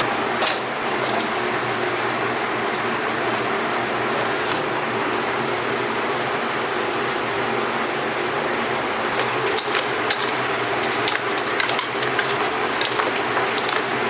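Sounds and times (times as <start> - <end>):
chicken sizzling in hot oil: 6.8 - 14.0.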